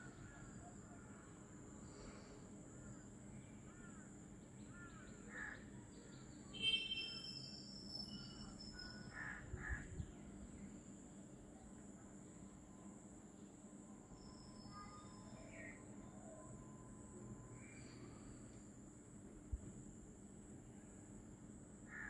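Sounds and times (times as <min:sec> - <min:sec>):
whistled bird call: 0:06.6 - 0:08.9
high-pitched insect drone: 0:06.8 - 0:09.4.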